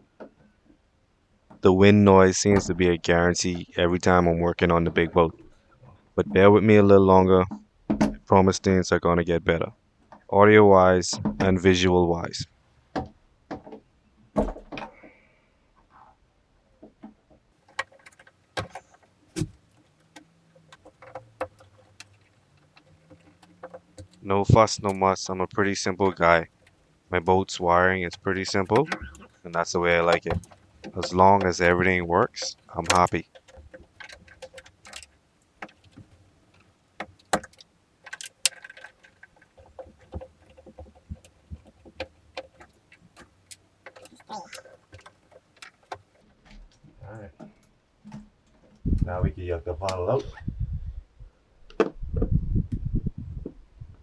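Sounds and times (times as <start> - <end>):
small tools clicking and tapping: 17.6 - 46.3.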